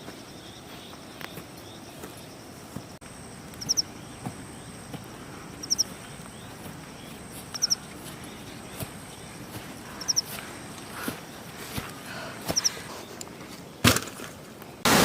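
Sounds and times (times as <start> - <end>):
insect tone: 0.0 - 13.8
bird chirping: 3.3 - 11.5, 12.5 - 13.2.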